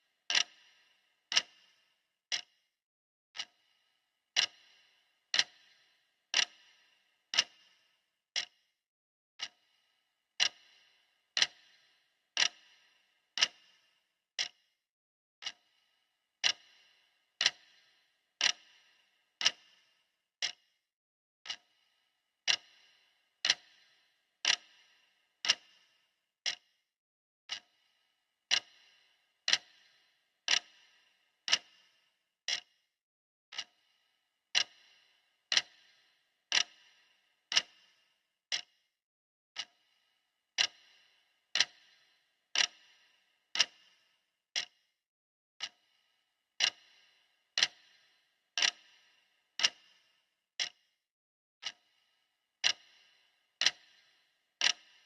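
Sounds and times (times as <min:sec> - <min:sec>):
clock ticking: 0:00.3 - 0:02.5, 0:03.4 - 0:07.8, 0:08.4 - 0:08.6, 0:09.4 - 0:09.7, 0:10.4 - 0:14.6, 0:15.4 - 0:15.8, 0:16.4 - 0:20.7, 0:21.4 - 0:21.8, 0:22.4 - 0:26.8, 0:27.5 - 0:27.9, 0:28.5 - 0:32.8, 0:33.5 - 0:33.9, 0:34.5 - 0:38.7, 0:39.6 - 0:44.8, 0:45.6 - 0:46.0, 0:46.6 - 0:50.8, 0:51.6 - 0:52.0, 0:52.6 - 0:55.0.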